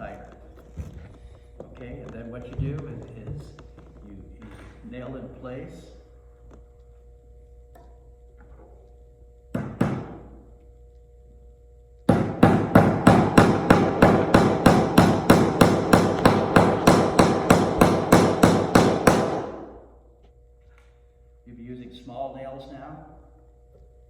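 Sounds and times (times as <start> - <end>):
hammer striking nail into wood: 9.5 - 10.2, 12.1 - 19.8.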